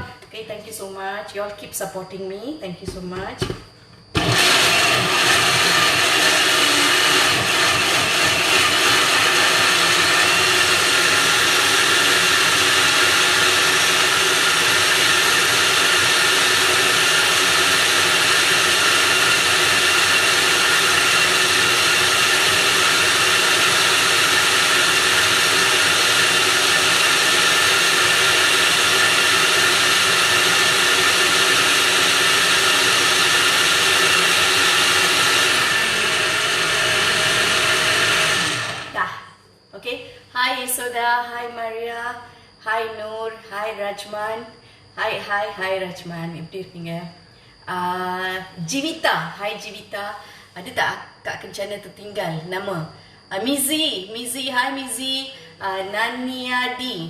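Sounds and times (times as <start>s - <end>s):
electric blender running: 4.1s - 39.2s.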